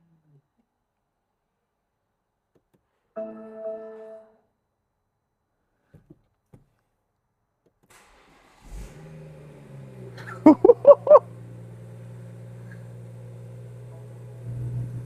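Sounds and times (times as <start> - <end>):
car engine starting and idling: 7.8 - 15.0.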